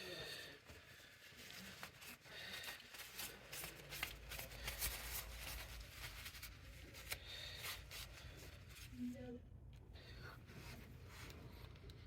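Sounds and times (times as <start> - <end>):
hand rubbing and rustling: 0.4 - 9.2.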